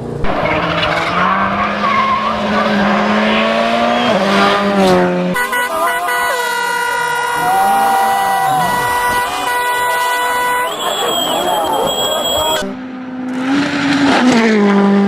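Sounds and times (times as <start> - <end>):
rally car engine at high revs: 0.0 - 5.7, 8.4 - 15.0
gravel and tyre noise: 0.0 - 15.0
horn-like tones chord: 5.4 - 12.8.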